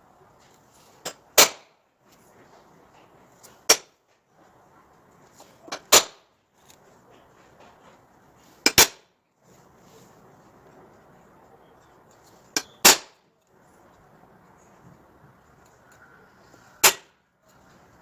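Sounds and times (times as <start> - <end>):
sharp hard knocks: 1.1 - 1.7, 3.7 - 4.0.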